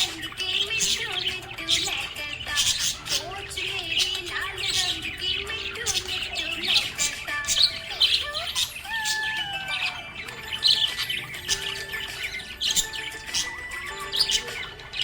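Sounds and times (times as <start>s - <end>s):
budgies chirping and squawking: 0.0s - 15.0s
gliding melodic tune: 0.0s - 15.0s.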